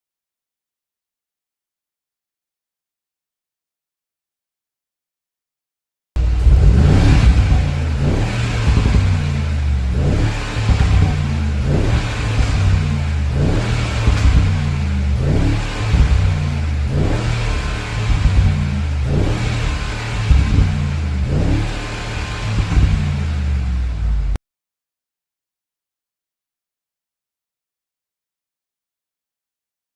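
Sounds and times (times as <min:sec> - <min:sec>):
exhaust pops and crackles: 0:06.2 - 0:23.3
car engine revving: 0:06.2 - 0:24.4.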